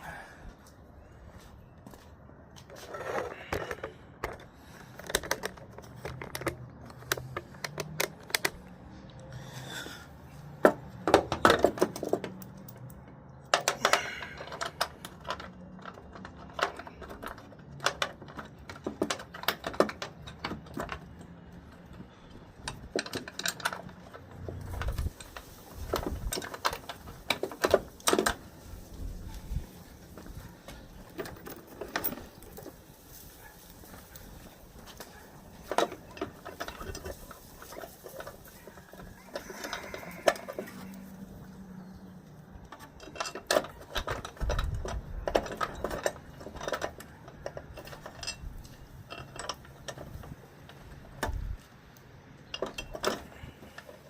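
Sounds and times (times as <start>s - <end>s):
hand tools clanking on metal: 10.5s - 41.8s, 42.5s - 51.7s, 52.4s - 54.0s.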